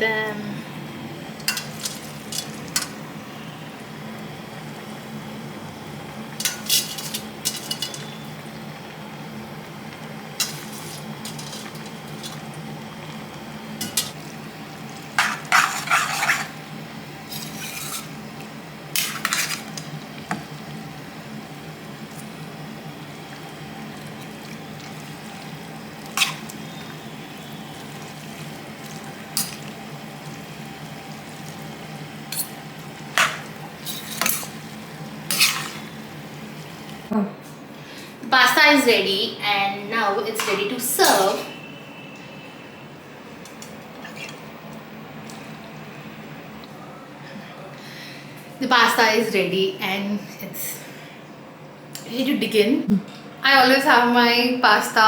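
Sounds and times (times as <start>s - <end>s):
spoon scraping and clinking on pan: 1.4s - 3.0s, 6.4s - 8.1s, 10.4s - 12.4s, 15.2s - 16.6s, 17.3s - 18.2s, 19.0s - 19.8s, 26.2s - 26.5s, 33.2s - 34.6s, 35.3s - 35.9s
spoon stirring pasta in a pan: 1.4s - 3.0s, 6.4s - 8.2s, 10.4s - 12.7s, 13.8s - 16.6s, 17.3s - 18.2s, 19.0s - 20.4s, 23.2s - 37.0s.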